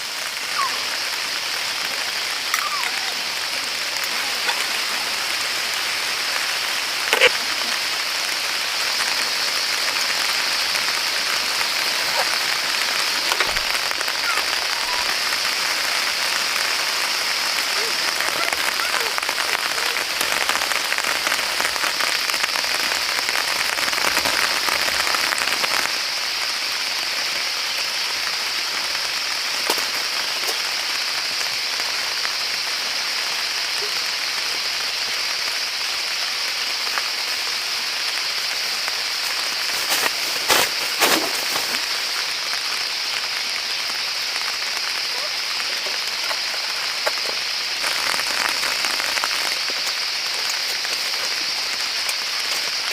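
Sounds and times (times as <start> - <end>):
steady rain falling: 0.0 - 52.9.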